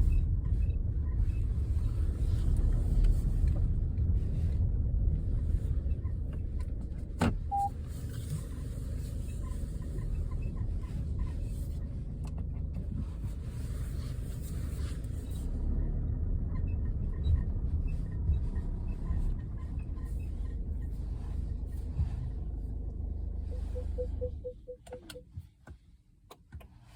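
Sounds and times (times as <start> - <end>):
car cabin rumble: 0.0 - 26.8
short beeps: 7.5 - 7.7, 23.5 - 25.3.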